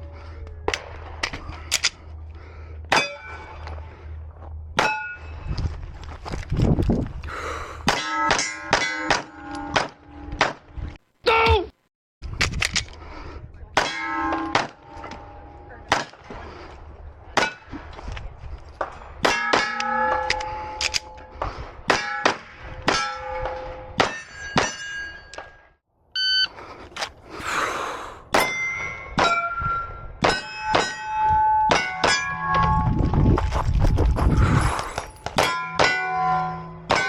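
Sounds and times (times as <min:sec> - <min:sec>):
steel plate clanging: 0:07.9 - 0:10.4, 0:13.8 - 0:15.8, 0:19.2 - 0:21.3, 0:34.3 - 0:37.0.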